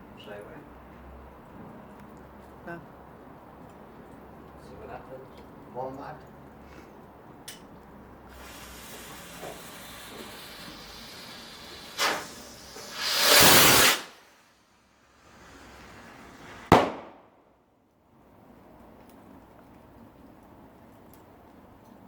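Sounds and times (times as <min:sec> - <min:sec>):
firework fuse hissing: 0:08.3 - 0:16.9
firework whoosh: 0:08.3 - 0:17.3
firework bang: 0:11.8 - 0:14.2, 0:15.6 - 0:17.4.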